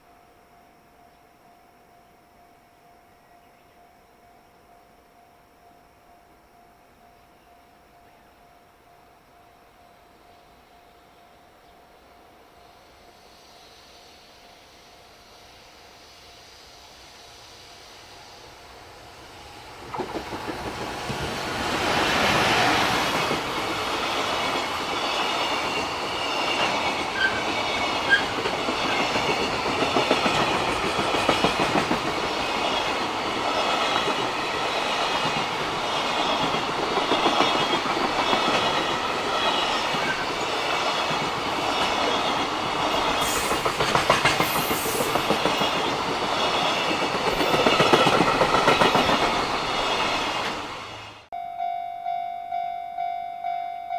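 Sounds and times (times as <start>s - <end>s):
train wagons clacking over rails: 19.8s - 50.8s
crossing warning bell ringing: 51.4s - 53.9s.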